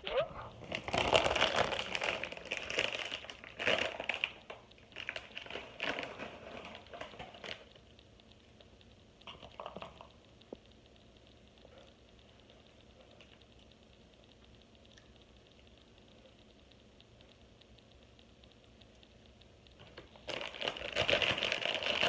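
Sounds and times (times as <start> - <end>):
snack bag crinkling: 0.1 - 7.8, 19.8 - 22.0
faint clicks: 6.6 - 20.4.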